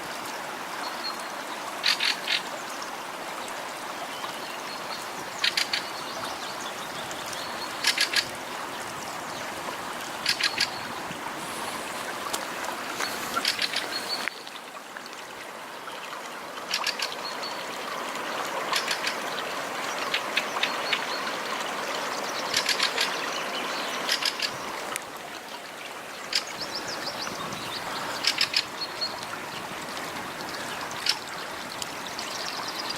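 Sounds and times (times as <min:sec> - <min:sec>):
floodwater rushing: 0:00.0 - 0:32.9
bird calling: 0:12.8 - 0:14.3.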